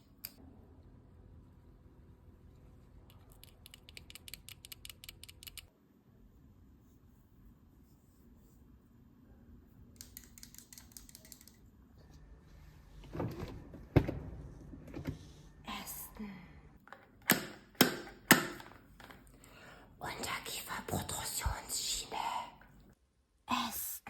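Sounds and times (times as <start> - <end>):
rattle of small clicks: 3.1 - 5.7, 10.0 - 11.6
sharp clicks: 3.1 - 5.7.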